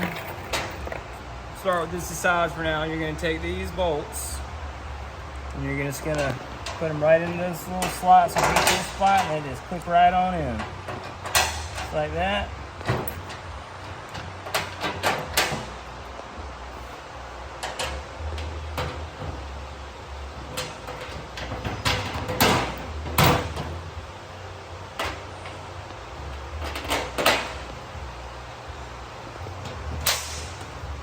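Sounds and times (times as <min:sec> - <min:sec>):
metal clanks: 0:00.0 - 0:02.2, 0:05.9 - 0:12.2, 0:20.4 - 0:23.9, 0:29.5 - 0:31.0
metal clicks and knocks: 0:06.1 - 0:09.9.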